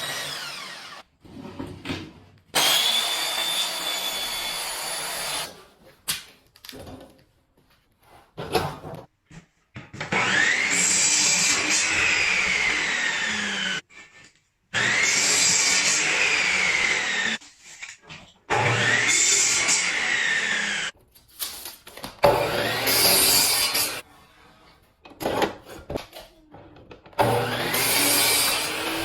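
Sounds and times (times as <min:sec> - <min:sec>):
power tool motor whine: 0:00.0 - 0:01.0, 0:02.6 - 0:05.5, 0:27.2 - 0:29.0.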